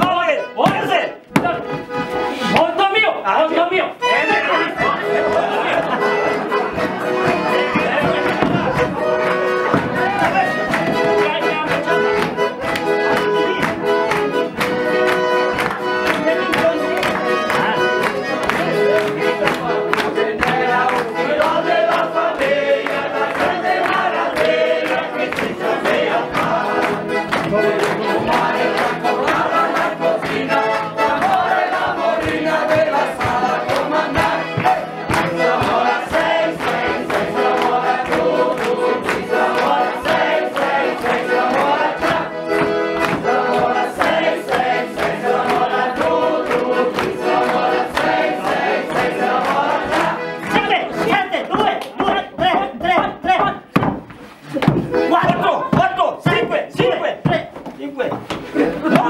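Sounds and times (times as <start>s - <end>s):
folk band accompaniment: 0.0s - 59.0s
voices singing in chorus: 4.0s - 10.7s, 17.1s - 51.0s.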